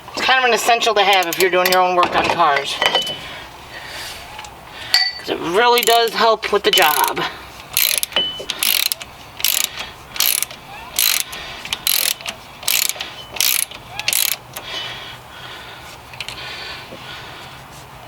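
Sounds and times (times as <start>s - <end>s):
ratchet wrench clicking: 1.1s - 1.9s, 5.7s - 14.7s.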